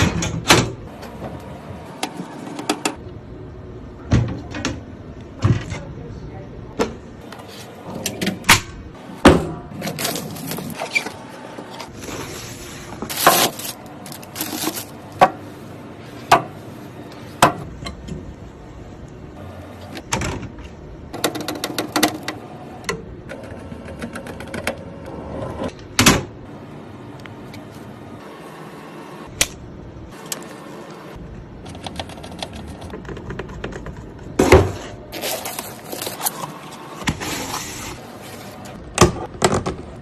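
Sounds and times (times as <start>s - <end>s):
scraping and rustling: 9.8s - 15.0s, 34.8s - 38.8s.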